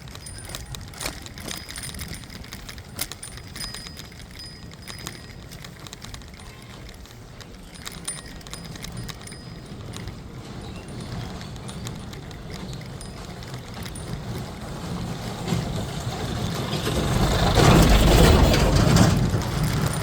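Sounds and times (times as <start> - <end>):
sharp clinks and knocks: 0.0 - 20.0.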